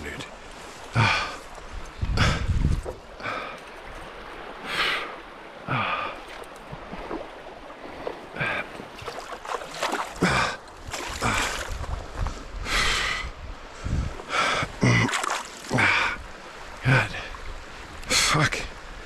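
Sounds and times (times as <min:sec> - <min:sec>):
man breathing hard: 0:02.1 - 0:03.6, 0:10.2 - 0:11.7, 0:12.6 - 0:14.8.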